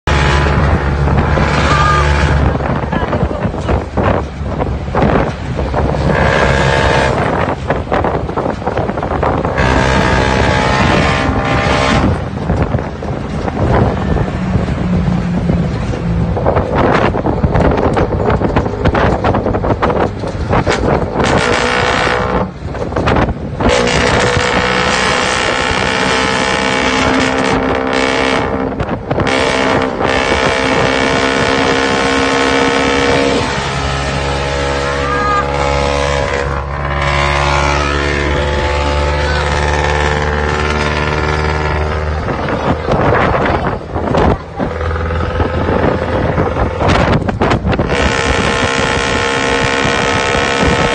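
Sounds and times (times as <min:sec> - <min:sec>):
diesel engine exhaust: 0:00.0 - 0:50.9.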